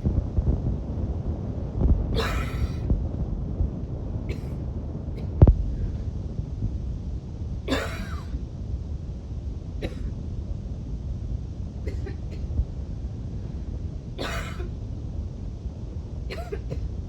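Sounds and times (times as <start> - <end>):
steady low rumble: 0.0 - 17.0
woman coughing: 2.2 - 2.9, 4.3 - 4.6, 7.7 - 8.3, 9.8 - 10.1, 11.9 - 12.4, 14.2 - 14.7, 16.3 - 16.9.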